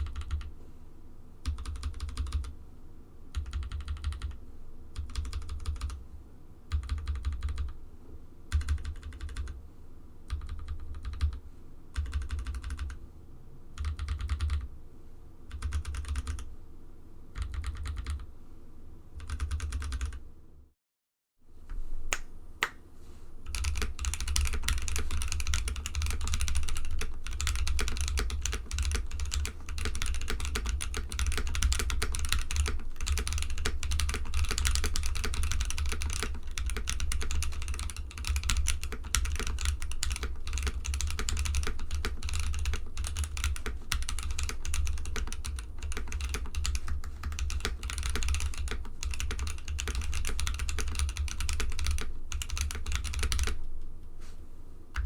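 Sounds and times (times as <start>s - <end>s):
fast typing on mechanical keyboard: 0.0s - 0.5s, 1.4s - 2.5s, 3.3s - 4.4s, 5.0s - 6.0s, 6.7s - 7.8s, 8.5s - 9.6s, 10.3s - 13.0s, 13.8s - 14.7s, 15.5s - 16.5s, 17.4s - 18.3s, 19.2s - 20.2s, 23.5s - 53.6s.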